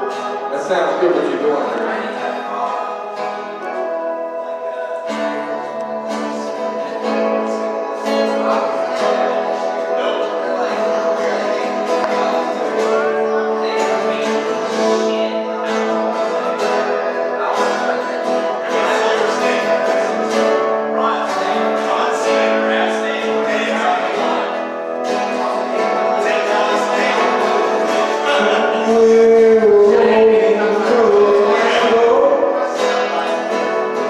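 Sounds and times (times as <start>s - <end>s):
acoustic guitar strumming: 0.0s - 34.0s.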